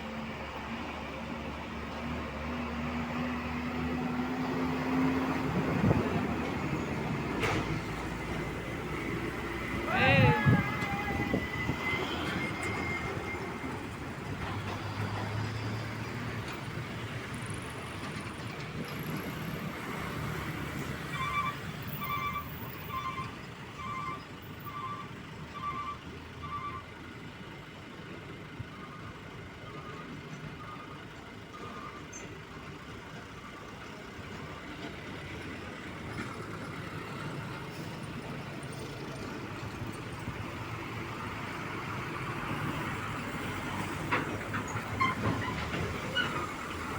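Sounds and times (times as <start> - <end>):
truck traffic: 0.0 - 46.9
reversing alarm beeps: 10.9 - 14.0.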